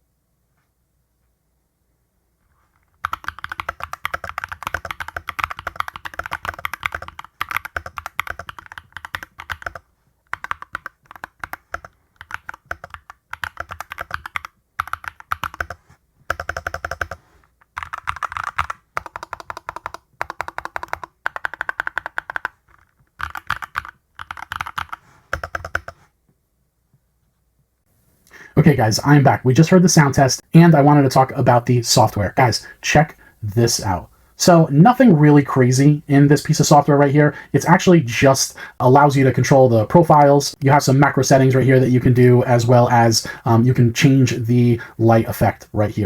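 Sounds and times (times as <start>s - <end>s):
mechanical keyboard typing: 3.0s - 26.0s.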